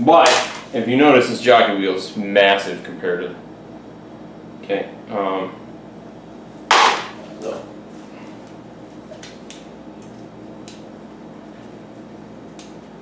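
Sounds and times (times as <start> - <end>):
steady low hum: 0.0 - 1.5
sharp clack: 0.3 - 0.7, 6.7 - 7.2.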